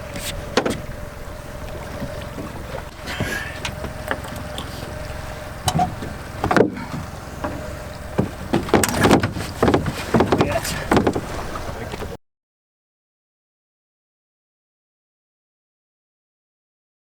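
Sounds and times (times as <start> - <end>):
boat on the water: 0.0 - 12.2
gear knocking and clattering on deck: 5.6 - 12.2.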